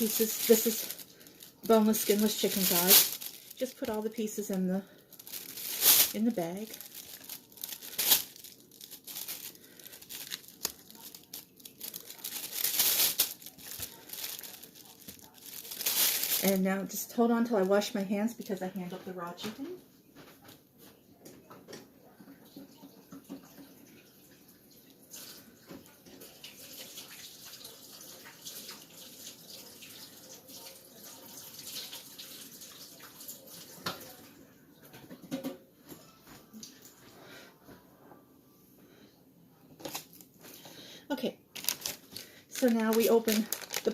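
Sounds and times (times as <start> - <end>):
plastic bag crinkling: 0.0 - 18.6, 39.8 - 40.6, 41.5 - 43.9
water running from a tap: 23.4 - 34.1.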